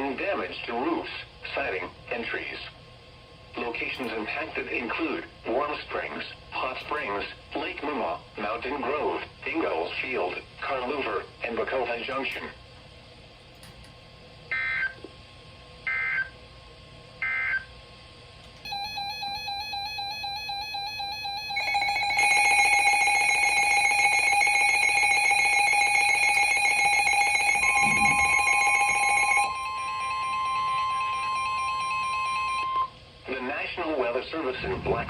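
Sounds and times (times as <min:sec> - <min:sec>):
steady electronic alert tone: 0:18.7 - 0:32.6
buzzy digital data tones: 0:25.8 - 0:29.8
second steady tone: 0:26.8 - 0:32.9.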